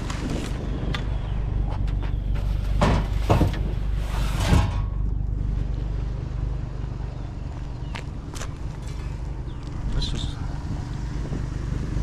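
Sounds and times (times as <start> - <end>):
vehicle engine running low: 0.0 - 12.0
scrap metal clanking and scraping: 1.7 - 5.1.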